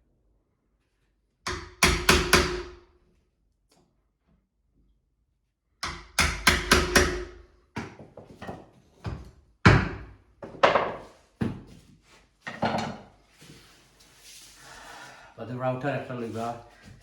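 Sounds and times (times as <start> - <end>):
chisel being struck into wood: 1.5 - 2.8, 5.8 - 8.0.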